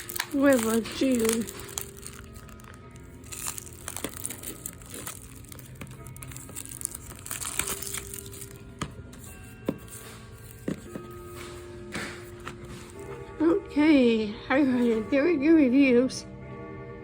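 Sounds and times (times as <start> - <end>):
plastic packaging crinkling: 0.0 - 11.6
faint music: 0.0 - 17.0.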